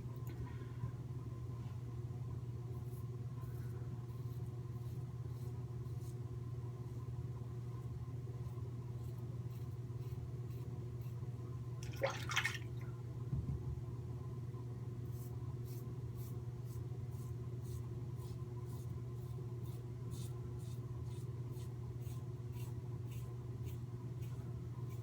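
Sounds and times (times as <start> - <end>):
steady low hum: 0.0 - 25.0
water splash: 11.8 - 12.8.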